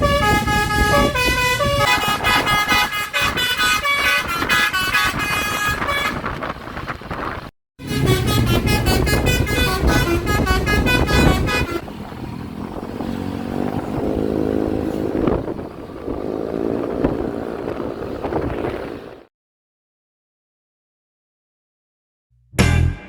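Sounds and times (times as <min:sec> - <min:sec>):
musical bus horn tune: 0:00.0 - 0:06.6, 0:07.8 - 0:11.9
road noise: 0:00.0 - 0:19.3
vehicle engine rumble: 0:00.0 - 0:19.3.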